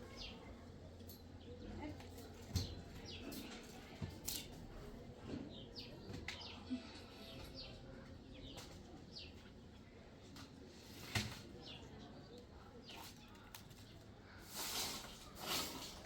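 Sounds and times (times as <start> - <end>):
small birds chirping: 0.1 - 3.7, 5.3 - 10.2, 10.9 - 14.4.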